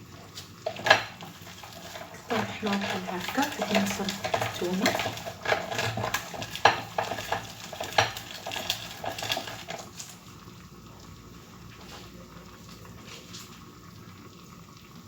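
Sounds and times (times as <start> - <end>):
utensil knocking and scraping dish: 0.7 - 9.9.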